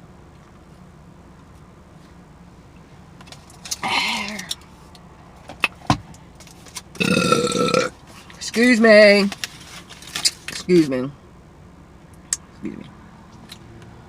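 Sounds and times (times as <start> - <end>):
low hum inside car: 0.0 - 14.0
loud burps: 7.0 - 8.0.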